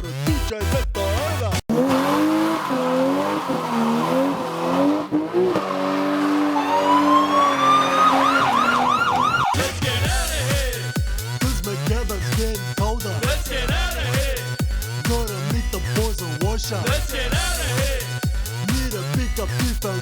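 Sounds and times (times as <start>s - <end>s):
song music: 0.1s - 20.0s
tyres squealing: 1.7s - 10.0s
car engine revving: 1.7s - 10.8s
siren wailing and yelping: 2.0s - 9.8s.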